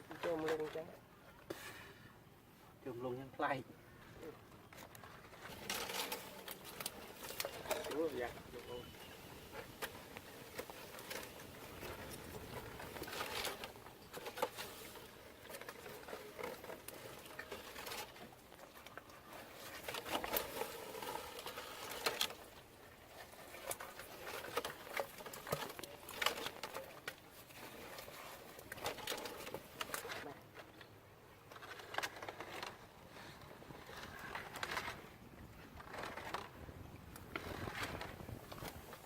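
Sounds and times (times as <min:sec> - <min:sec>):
irregular rustling: 0:04.7 - 0:30.8.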